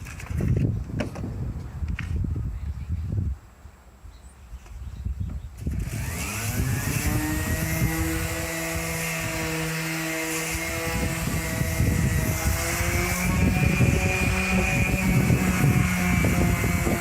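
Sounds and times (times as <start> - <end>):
electric sander whine: 5.6 - 17.0.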